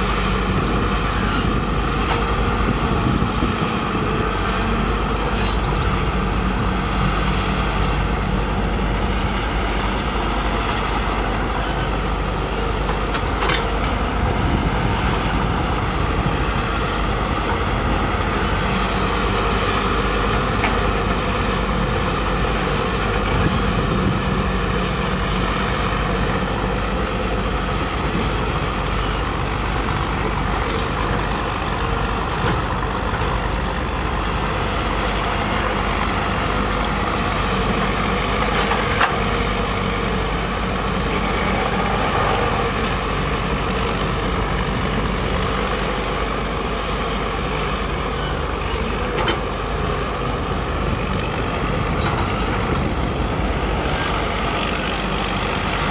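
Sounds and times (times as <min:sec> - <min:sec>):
heavy machinery diesel engines: 0:00.0 - 0:55.9.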